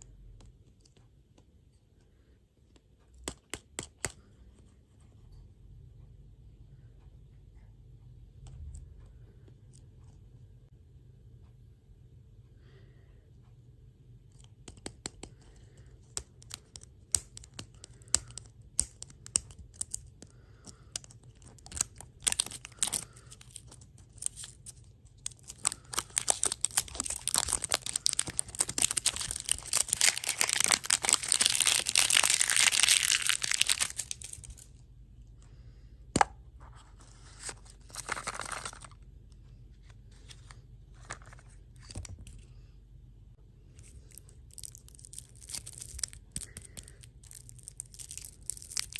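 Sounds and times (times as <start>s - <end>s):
packaging crinkling and tearing: 20.7s - 34.7s, 37.4s - 39.0s, 43.8s - 48.9s.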